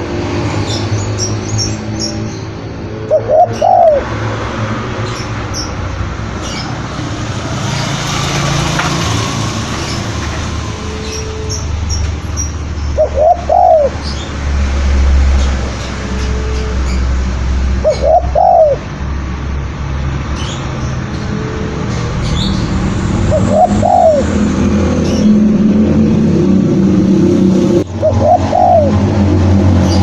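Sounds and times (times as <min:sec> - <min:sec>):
dove cooing: 0:02.9 - 0:04.4, 0:13.0 - 0:14.2, 0:17.8 - 0:18.9, 0:23.3 - 0:24.6, 0:27.9 - 0:29.1.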